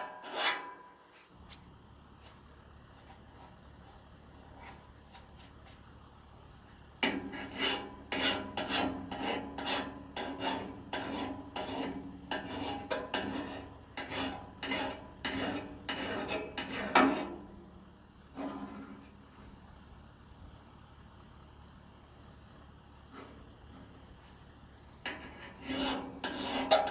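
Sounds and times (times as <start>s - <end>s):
metal file scraping steel blade: 0.0s - 0.9s, 7.0s - 17.4s, 25.1s - 26.9s.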